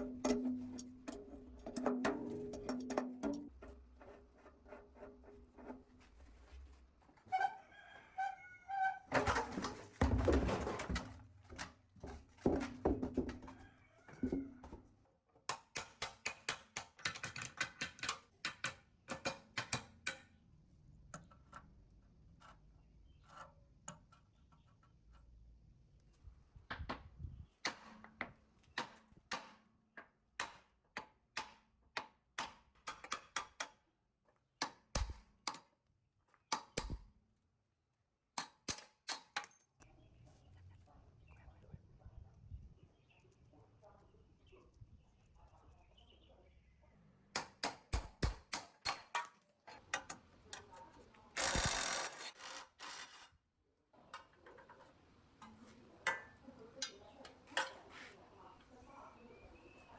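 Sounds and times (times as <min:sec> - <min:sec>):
sharp knocks and taps on metal: 0:00.0 - 0:03.8, 0:15.4 - 0:20.4, 0:26.7 - 0:33.8, 0:34.5 - 0:35.7, 0:36.4 - 0:37.1, 0:47.3 - 0:50.7
metal parts scraping and rattling: 0:51.4 - 0:53.3.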